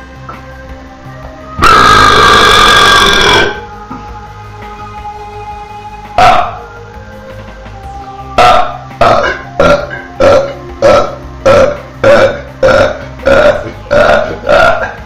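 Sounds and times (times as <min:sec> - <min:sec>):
loud burps: 0:01.6 - 0:03.7, 0:06.2 - 0:06.6, 0:08.4 - 0:15.0.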